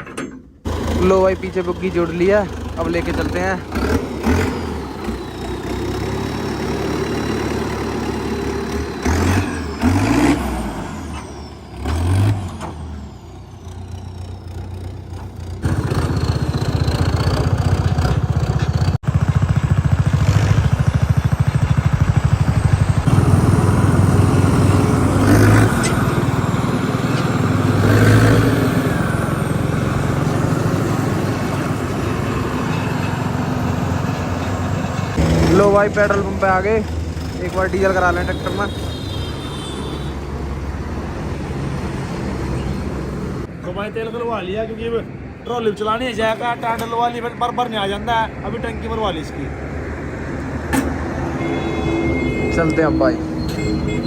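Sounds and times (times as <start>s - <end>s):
tractor diesel engine revving: 0.6s - 43.6s.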